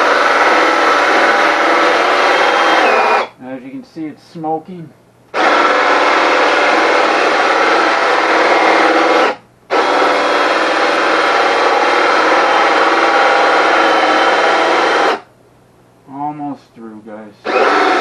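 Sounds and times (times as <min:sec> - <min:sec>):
power drill with hole saw grinding: 0:00.0 - 0:03.3, 0:05.3 - 0:15.3, 0:17.4 - 0:18.0.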